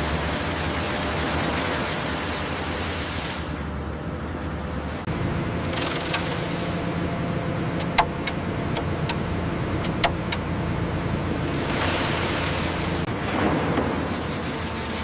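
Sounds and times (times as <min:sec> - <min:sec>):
sawmill machinery humming: 0:00.0 - 0:13.1
sharp knocks: 0:07.8 - 0:09.2, 0:09.8 - 0:10.5.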